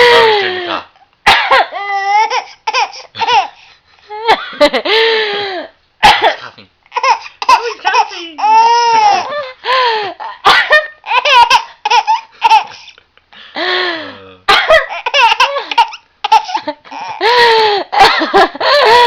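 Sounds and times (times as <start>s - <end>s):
adult coughing: 1.3s - 1.7s, 6.0s - 8.3s, 14.5s - 16.7s
baby laughing: 1.6s - 3.6s, 6.9s - 9.6s, 10.5s - 13.0s, 14.6s - 19.0s.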